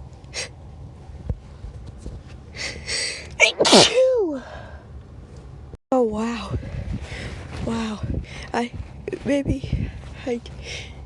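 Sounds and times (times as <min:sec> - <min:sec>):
person inhaling before sneeze: 0:02.8 - 0:04.8
person sneezing: 0:03.4 - 0:04.6.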